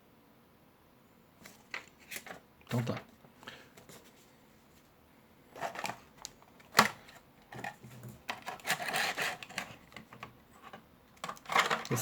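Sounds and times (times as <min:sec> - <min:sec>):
packaging rustling: 0:05.6 - 0:12.0.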